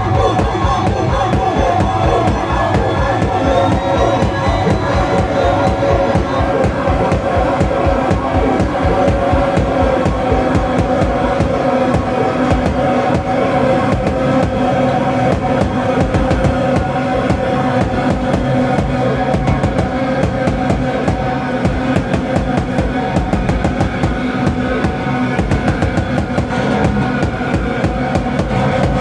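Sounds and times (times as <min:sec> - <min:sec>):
distorted bass guitar droning: 0:00.0 - 0:29.0
drum kit played fast: 0:00.4 - 0:29.0.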